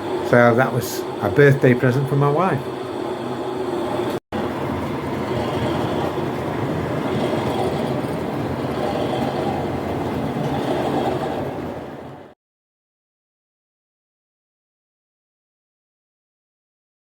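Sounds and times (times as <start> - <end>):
model train rumbling on track: 0.0 - 12.4.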